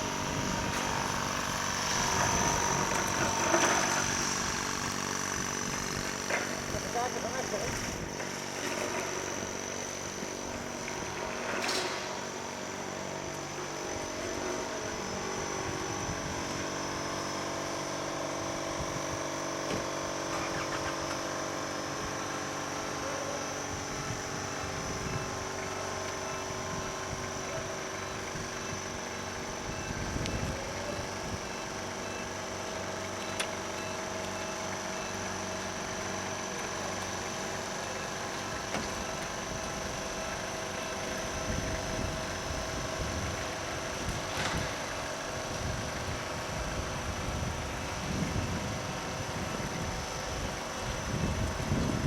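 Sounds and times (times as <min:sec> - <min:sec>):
mechanical hum: 0:00.0 - 0:52.0.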